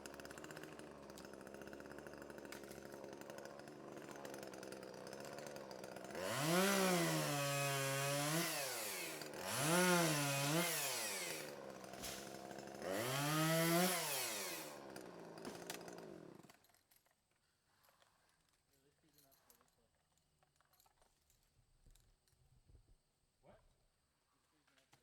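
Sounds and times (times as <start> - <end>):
chainsaw cutting wood: 0.0 - 16.8
chainsaw idling and revving: 0.0 - 16.8.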